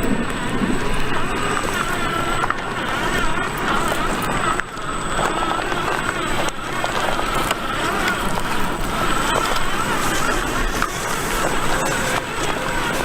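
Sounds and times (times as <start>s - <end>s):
electric motor whining: 0.0s - 13.0s
tyres crackling on loose ground: 0.0s - 13.0s.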